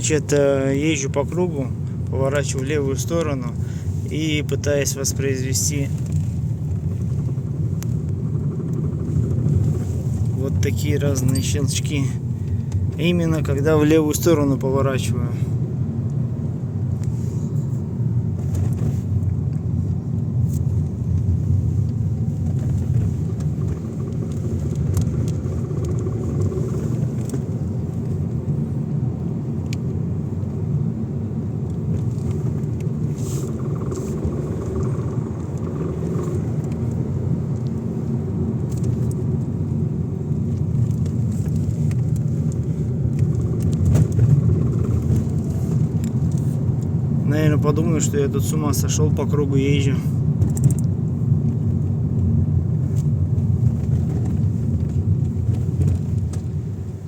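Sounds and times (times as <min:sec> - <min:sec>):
car road and engine rumble: 0:00.0 - 0:57.0
suspension clicks: 0:00.0 - 0:57.0.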